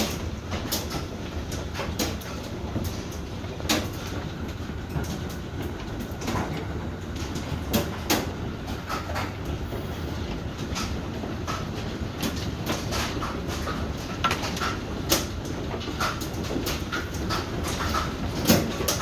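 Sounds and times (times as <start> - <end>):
hail falling: 0.0 - 19.0
hailstones hitting hard surface: 10.6 - 19.0.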